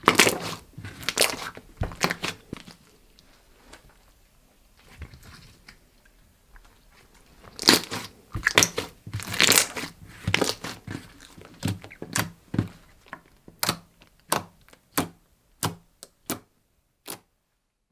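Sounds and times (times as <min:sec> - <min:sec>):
slime squishing and popping: 0:00.0 - 0:02.8, 0:07.5 - 0:16.4.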